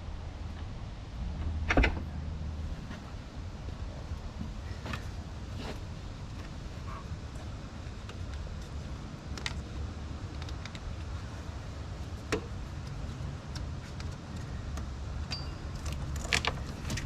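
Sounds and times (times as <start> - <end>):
steady low rumble: 0.0 - 17.0
light clicks and taps of tools: 8.0 - 11.2, 12.1 - 17.0.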